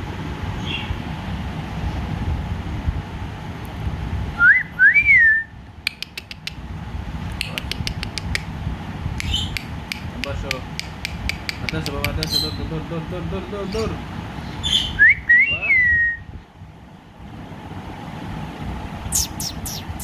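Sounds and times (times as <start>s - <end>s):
sharp clicks: 5.9s - 6.6s, 7.3s - 8.5s, 9.2s - 12.4s, 19.2s - 20.0s
person whistling rising and falling: 19.2s - 20.0s.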